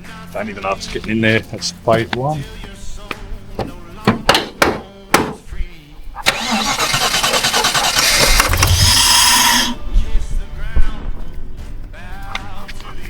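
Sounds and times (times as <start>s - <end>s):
sharp knocks: 3.6s - 5.4s
starter motor cranking engine: 6.2s - 9.8s.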